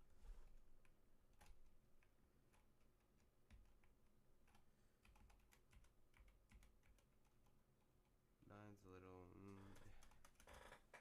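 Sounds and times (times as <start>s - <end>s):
computer keyboard key presses: 3.5s - 7.2s, 9.4s - 10.5s.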